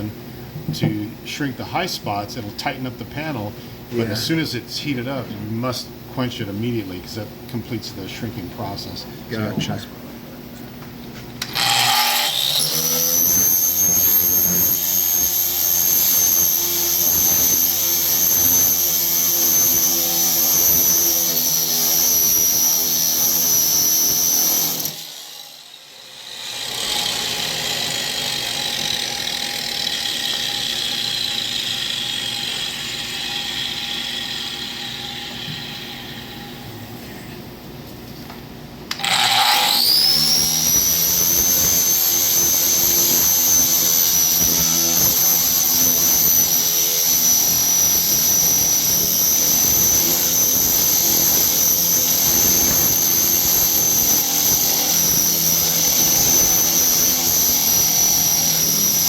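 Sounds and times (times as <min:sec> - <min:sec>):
power tool disc whining on metal: 0:11.3 - 0:36.8, 0:38.9 - 0:59.0.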